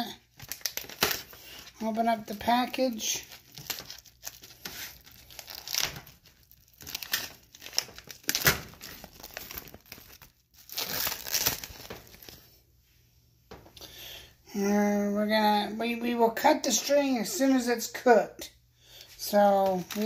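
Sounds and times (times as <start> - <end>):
packaging being torn and crinkled: 0.3 - 12.4, 19.5 - 20.0.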